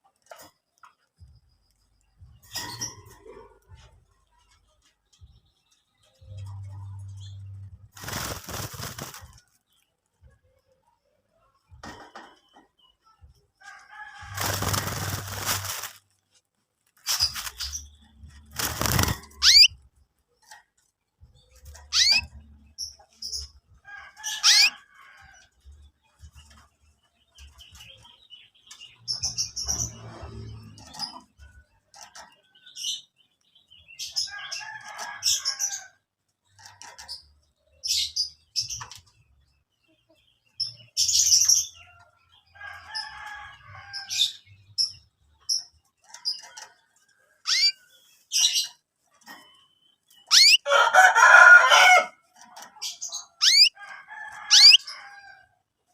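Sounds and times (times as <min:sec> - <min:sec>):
young canaries chirping: 0:07.2 - 0:09.2, 0:14.2 - 0:15.9, 0:17.1 - 0:19.8, 0:21.6 - 0:23.6, 0:47.5 - 0:52.0, 0:52.7 - 0:55.2
wing flapping: 0:07.9 - 0:09.5, 0:14.2 - 0:16.1, 0:17.0 - 0:19.7.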